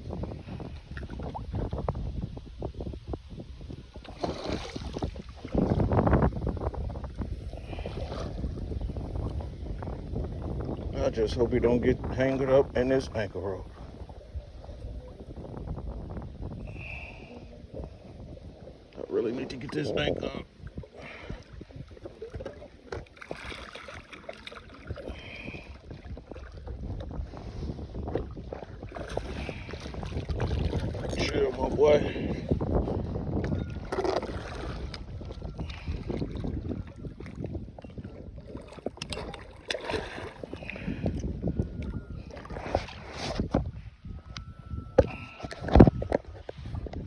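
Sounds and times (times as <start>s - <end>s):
wind rumble on microphone: 0.0s - 47.0s
water sloshing: 4.0s - 9.4s, 17.3s - 43.8s.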